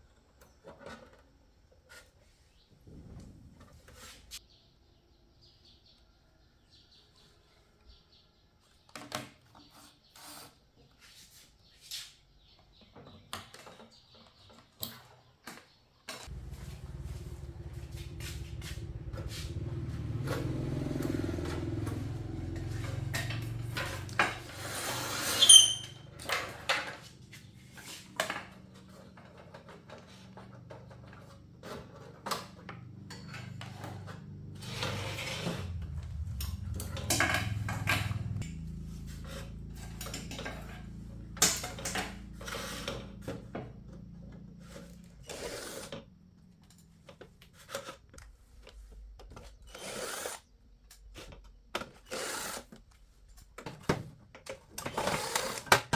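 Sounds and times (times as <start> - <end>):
steady low hum: 16.3 - 20.0, 33.1 - 45.3
metal tools clicking and clinking: 25.4 - 26.0.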